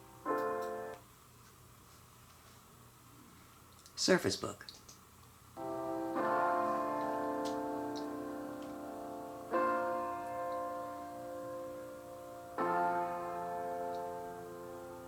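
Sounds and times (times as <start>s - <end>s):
piano chords through laptop speakers: 0.0s - 1.0s, 5.6s - 15.0s.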